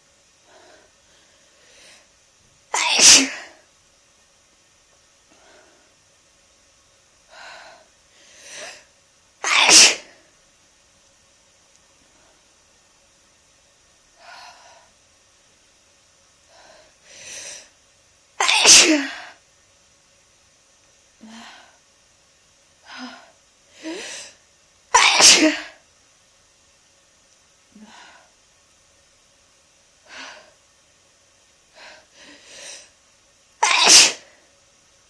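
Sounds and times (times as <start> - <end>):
person sneezing loudly: 2.7 - 3.6, 9.4 - 10.2, 18.4 - 19.4, 24.9 - 25.8, 33.6 - 34.3.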